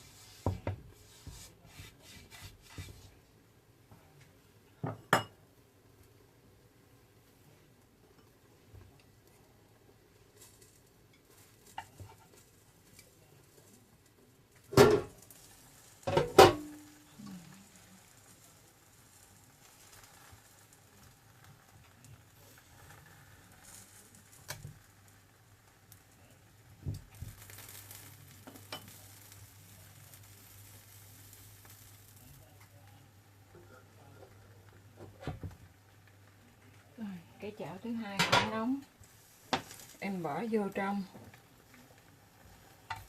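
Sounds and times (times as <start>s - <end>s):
batter sizzling in a pan: 0.0s - 43.0s
metal pans clanking: 14.7s - 15.2s, 16.1s - 16.8s, 38.2s - 38.6s.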